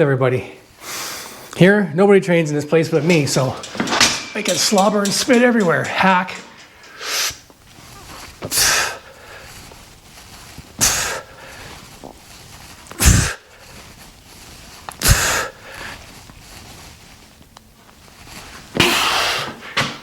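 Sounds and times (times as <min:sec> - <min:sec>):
man forcefully exhaling: 0:13.0 - 0:13.4, 0:15.0 - 0:15.5, 0:18.8 - 0:19.6.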